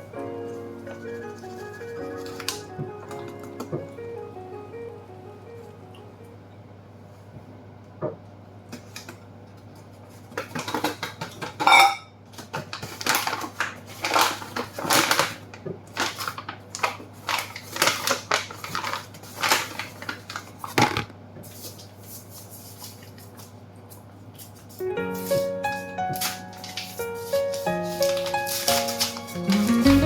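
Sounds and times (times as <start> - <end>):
utensils and dishes clinking: 10.6 - 12.2.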